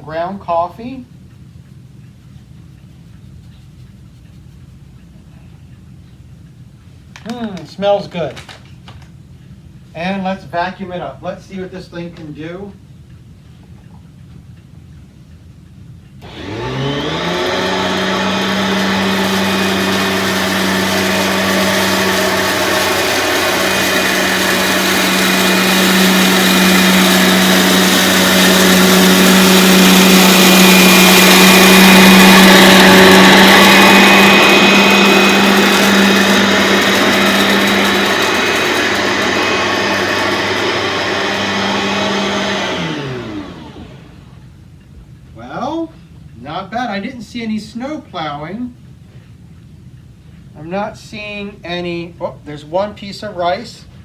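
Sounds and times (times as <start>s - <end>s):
vacuum cleaner running: 16.2s - 44.4s.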